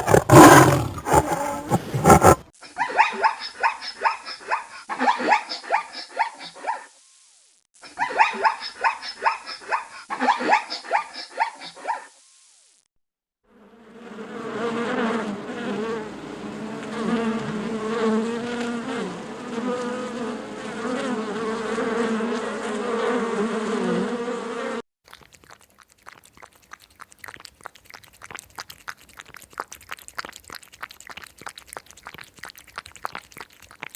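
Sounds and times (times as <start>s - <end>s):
crackle of rapid clicks: 25.2s - 33.9s.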